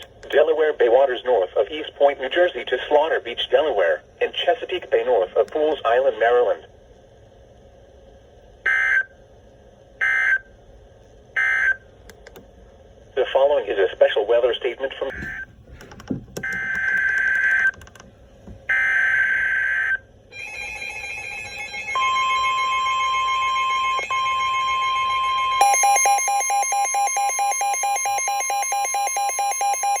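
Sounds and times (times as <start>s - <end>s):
steady warning alarm tone: 8.7s - 9.1s, 10.0s - 10.5s, 11.4s - 11.8s, 15.1s - 15.6s, 16.4s - 17.8s, 18.6s - 30.0s.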